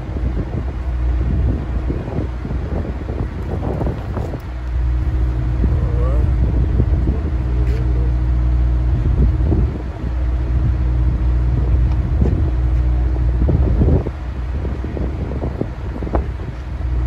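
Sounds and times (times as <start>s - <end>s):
engine idling: 0.0s - 17.0s
wind buffeting microphone: 0.0s - 17.0s.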